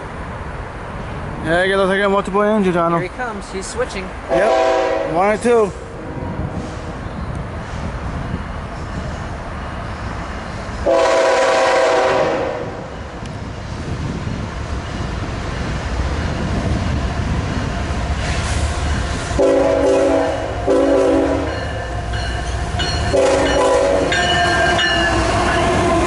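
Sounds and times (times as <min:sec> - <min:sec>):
locomotive air horn blast: 0:04.3 - 0:05.1, 0:10.8 - 0:12.9, 0:19.4 - 0:21.5, 0:23.1 - 0:24.2.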